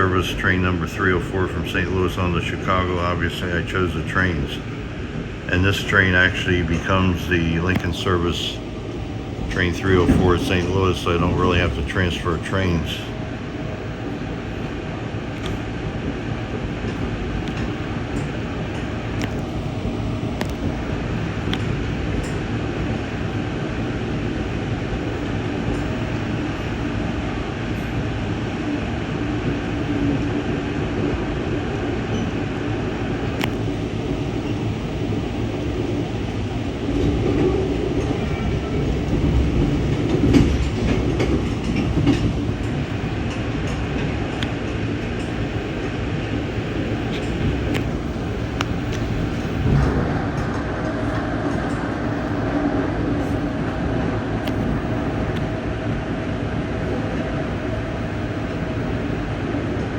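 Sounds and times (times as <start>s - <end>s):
train wheels rumbling on rail: 0.0s - 59.9s
wheel clicks over rail joints: 39.0s - 52.1s.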